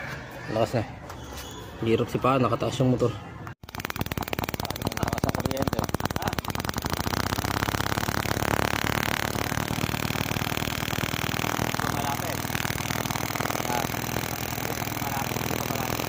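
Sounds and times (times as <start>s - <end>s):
motorcycle engine idling: 3.7s - 16.0s.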